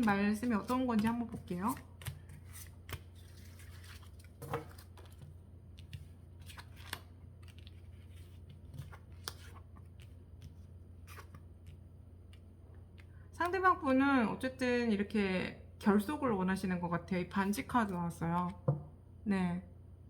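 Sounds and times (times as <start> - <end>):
low steady hum: 0.0 - 20.0
cards clicking and sliding: 5.8 - 12.4.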